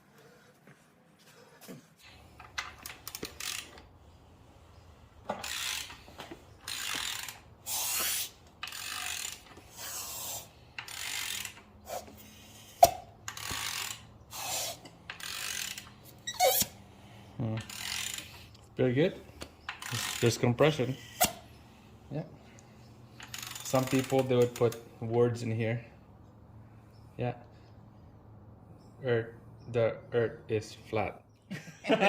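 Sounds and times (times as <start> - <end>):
ratchet wrench clicking: 2.4 - 3.9, 5.3 - 16.8, 17.5 - 18.5, 19.6 - 21.5, 23.2 - 24.8.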